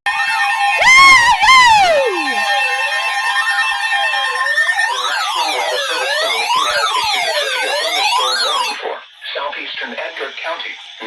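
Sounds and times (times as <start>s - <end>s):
electronic siren tones sweeping: 0.8s - 8.8s
two-tone attention signal: 4.0s - 8.8s.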